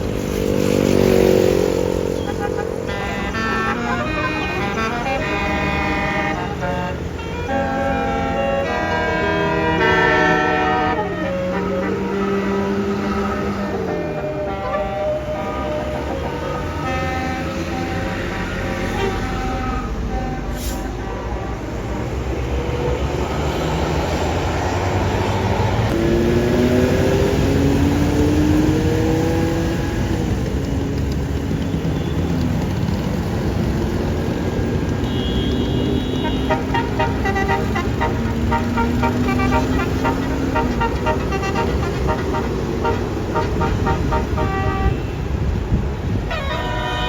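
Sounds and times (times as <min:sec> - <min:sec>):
bus diesel engine pulling away: 0:00.0 - 0:35.1, 0:35.8 - 0:46.9
traffic rumble: 0:00.0 - 0:47.0
multi-tone air horn tune: 0:02.2 - 0:22.1, 0:35.0 - 0:45.5, 0:46.3 - 0:47.0.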